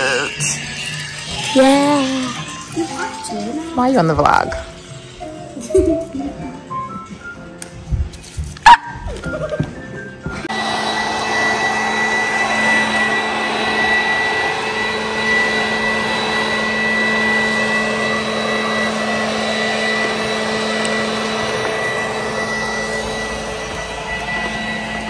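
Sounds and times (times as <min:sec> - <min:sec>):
leaf blower running: 0:00.0 - 0:03.6, 0:10.4 - 0:25.0.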